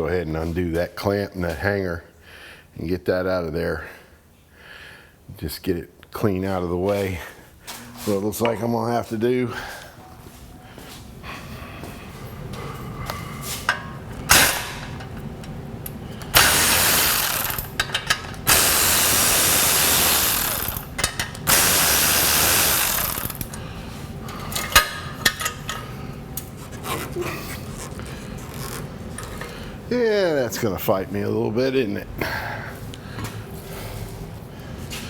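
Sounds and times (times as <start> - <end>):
power tool running: 14.2 - 23.7
hand ratchet clicking: 16.2 - 23.6.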